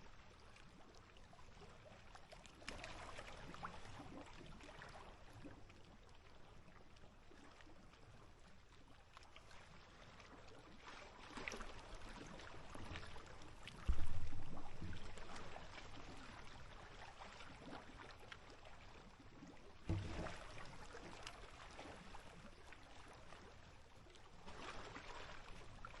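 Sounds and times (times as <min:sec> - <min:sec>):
small waves lapping: 0:00.2 - 0:26.0
little splashes: 0:01.5 - 0:08.2, 0:09.0 - 0:26.0
low water slaps: 0:11.3 - 0:19.0, 0:19.8 - 0:23.4.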